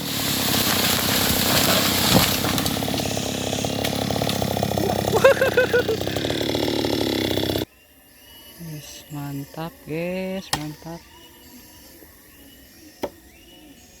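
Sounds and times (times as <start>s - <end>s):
chainsaw engine running: 0.0s - 7.7s.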